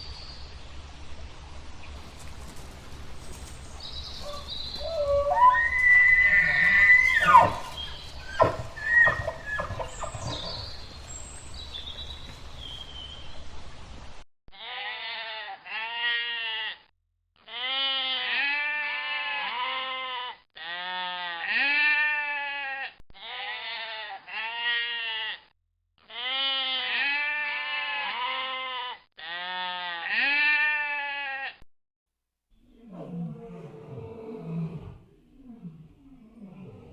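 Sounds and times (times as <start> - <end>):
quavering bleating: 4.9 - 10.6, 14.6 - 31.6.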